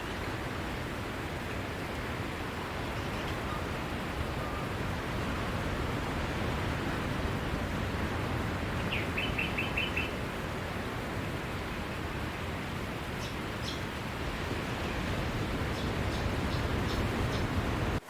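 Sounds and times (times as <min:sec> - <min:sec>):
bird chirping: 0:08.8 - 0:10.2, 0:13.2 - 0:13.8, 0:15.7 - 0:17.5.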